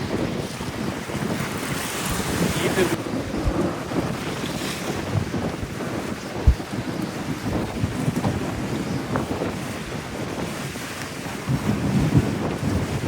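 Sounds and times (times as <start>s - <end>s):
wind thump: 0.0s - 9.6s
wind buffeting microphone: 0.0s - 13.0s.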